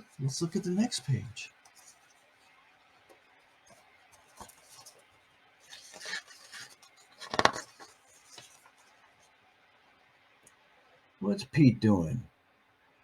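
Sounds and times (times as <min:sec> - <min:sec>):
paper rustling: 0:01.6 - 0:02.5, 0:03.1 - 0:09.2
book pages turning: 0:03.0 - 0:09.1.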